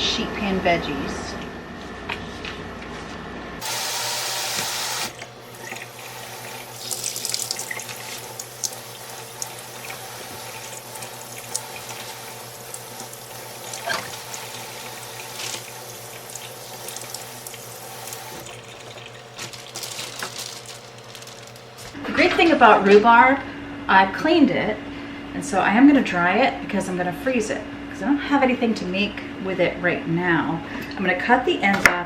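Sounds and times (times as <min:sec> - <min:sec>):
tap running into sink: 0:04.5 - 0:19.6
splashing and small knocks: 0:05.1 - 0:22.0.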